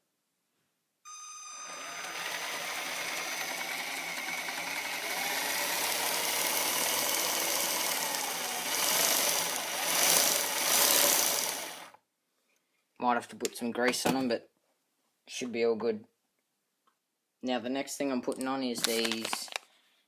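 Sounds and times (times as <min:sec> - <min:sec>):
electric motor whirring: 0:01.5 - 0:12.0.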